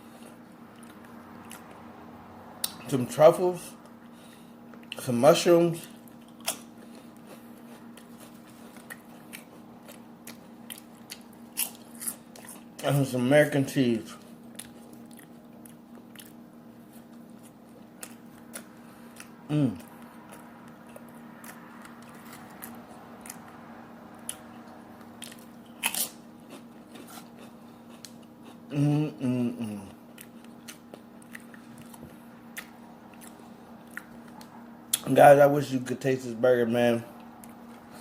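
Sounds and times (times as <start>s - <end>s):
faint steady hum: 0.0s - 38.0s
person biting and chewing: 6.1s - 12.8s, 14.4s - 23.6s, 24.2s - 28.8s, 29.6s - 35.1s
person humming: 19.5s - 19.9s, 28.7s - 30.0s.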